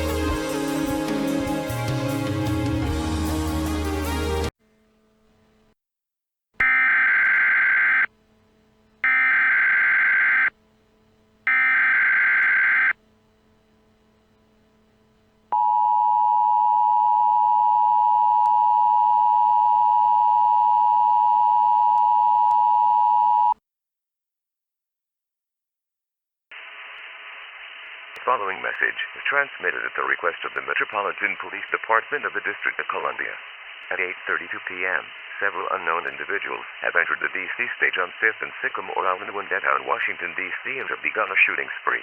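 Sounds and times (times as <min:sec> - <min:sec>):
digital data bursts: 0:06.6 - 0:08.1, 0:09.0 - 0:10.5, 0:11.5 - 0:12.9.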